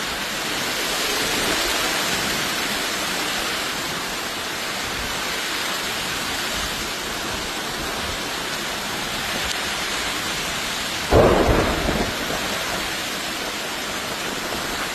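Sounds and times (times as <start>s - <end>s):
heavy rain falling: 0.0s - 14.9s
thunder clap: 11.1s - 14.9s.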